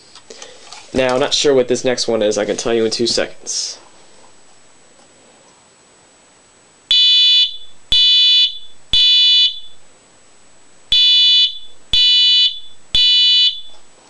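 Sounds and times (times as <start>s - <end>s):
fire alarm horn blasts: 6.9s - 9.8s, 10.9s - 13.8s.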